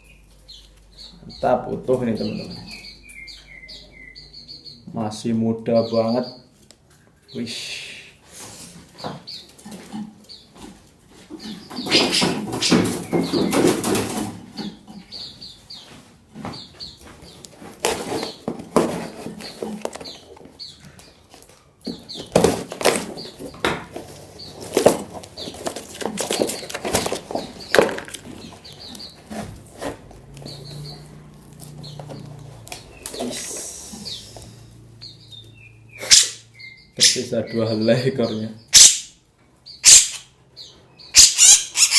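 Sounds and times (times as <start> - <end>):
high bird chirps: 0.0 - 4.9, 11.3 - 13.7, 30.3 - 31.2, 31.8 - 41.9
birds flapping in cardboard box: 11.7 - 14.5, 17.1 - 20.6, 21.3 - 30.2.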